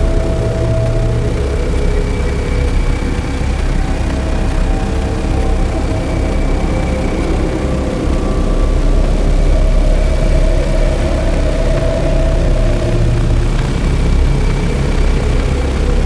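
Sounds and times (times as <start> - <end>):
experimental drone music: 0.0 - 16.0.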